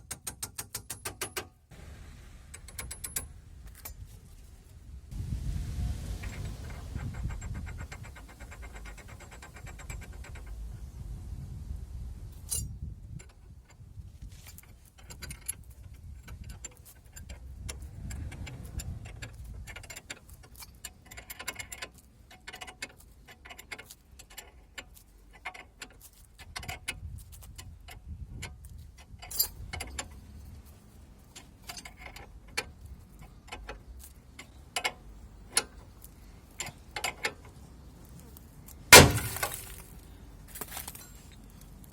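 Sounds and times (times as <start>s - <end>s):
metallic clicks and clinks: 2.5s - 4.2s.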